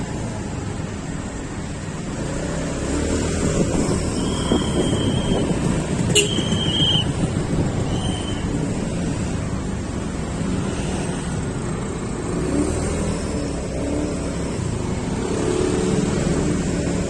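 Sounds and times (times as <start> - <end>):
road traffic noise: 0.0 - 17.0
wind on microphone: 3.1 - 10.1.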